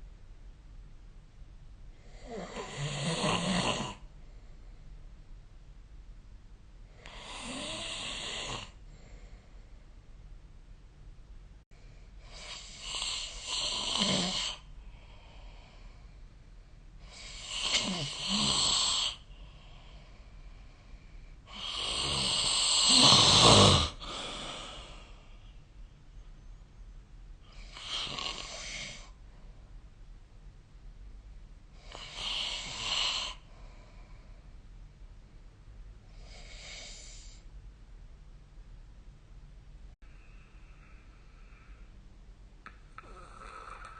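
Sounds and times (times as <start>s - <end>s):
person snoring: 2.0s - 4.1s, 7.0s - 8.8s, 12.2s - 15.8s, 17.0s - 20.1s, 21.5s - 25.3s, 27.5s - 29.2s, 31.8s - 33.5s, 43.0s - 43.9s.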